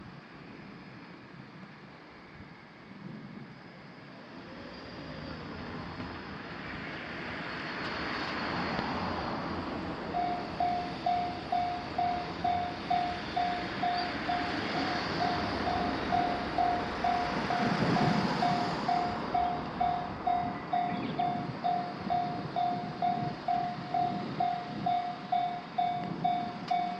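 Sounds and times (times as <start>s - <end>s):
rushing vehicle noise: 4.2s - 26.9s
level crossing warning bell: 10.1s - 26.9s.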